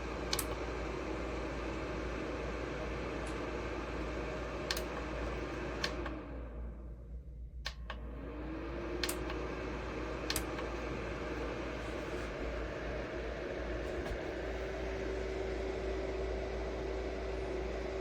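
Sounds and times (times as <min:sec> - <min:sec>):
space heater fan blowing: 0:00.0 - 0:18.0
sharp clicks: 0:04.7 - 0:05.1, 0:10.3 - 0:10.7.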